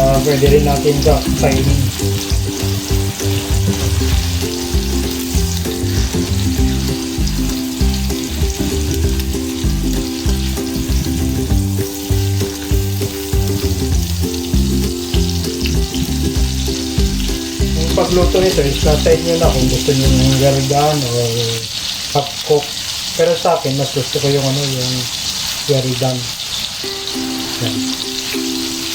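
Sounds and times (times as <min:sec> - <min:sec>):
low steady musical notes: 0:00.0 - 0:21.5, 0:26.8 - 0:28.9
steak sizzling in a frying pan: 0:00.0 - 0:28.9.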